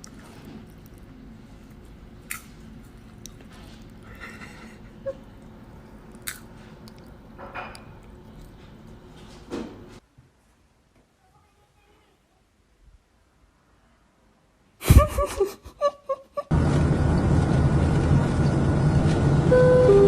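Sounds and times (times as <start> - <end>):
pet chewing and crunching: 0.0 - 4.6, 5.2 - 9.1.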